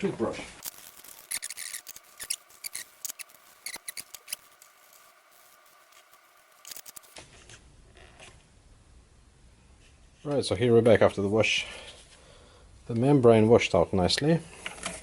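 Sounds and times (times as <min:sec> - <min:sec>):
small hard objects clicking and scraping: 0:00.6 - 0:07.2.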